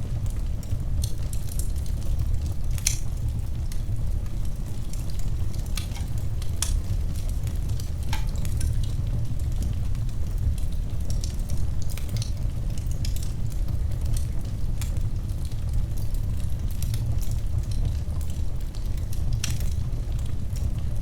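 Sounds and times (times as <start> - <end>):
low fire rumble: 0.0 - 21.0
wood fire crackling: 0.0 - 21.0.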